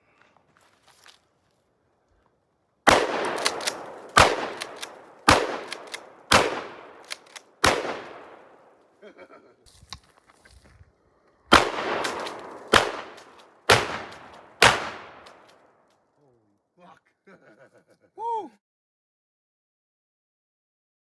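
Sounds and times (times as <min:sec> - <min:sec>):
gunshots with outdoor echo: 0:02.9 - 0:08.8, 0:11.5 - 0:15.5.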